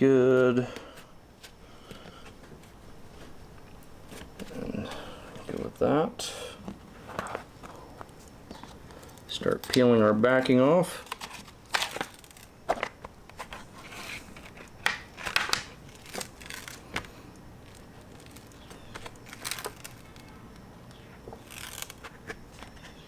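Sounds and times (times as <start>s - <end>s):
adhesive liner peeling off foam: 15.2s - 17.0s, 21.3s - 22.4s.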